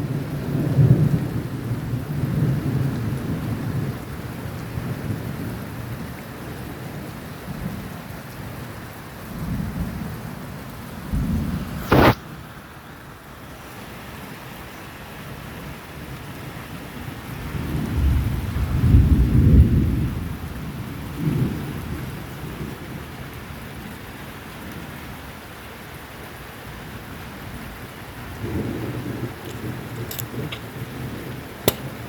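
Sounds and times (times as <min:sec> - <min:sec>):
steady rain: 0:00.0 - 0:32.0
thunder rumbling: 0:17.4 - 0:22.1, 0:28.2 - 0:32.0.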